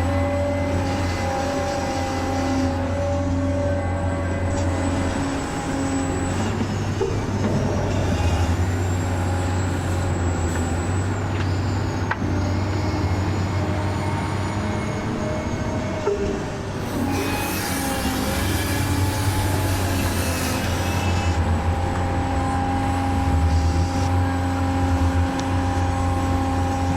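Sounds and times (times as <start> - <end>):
model truck motor whine: 17.9 - 26.9.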